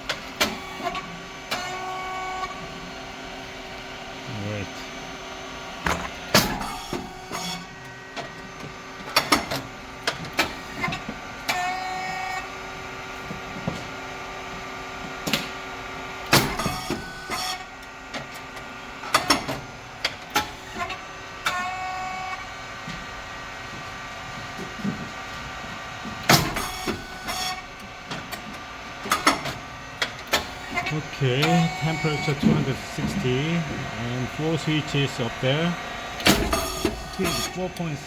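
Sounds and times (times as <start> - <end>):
machine motor and pump hum: 0.0 - 38.0
machine bangs and clacks: 26.2 - 28.4, 36.2 - 37.6.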